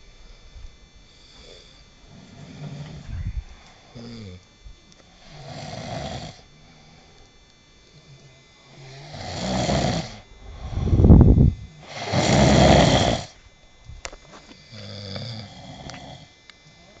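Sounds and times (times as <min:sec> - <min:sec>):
long breathy breath: 0:00.2 - 0:04.4, 0:08.9 - 0:13.4
person snoring: 0:01.1 - 0:04.4, 0:05.1 - 0:07.2, 0:07.9 - 0:13.4, 0:14.6 - 0:17.0.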